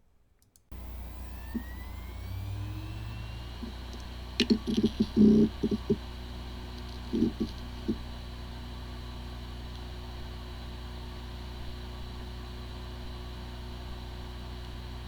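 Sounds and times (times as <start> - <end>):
hard drive whine spinning up: 0.7 - 15.0
steady hum: 0.7 - 15.0
hard drive clicks and knocks: 3.5 - 8.1.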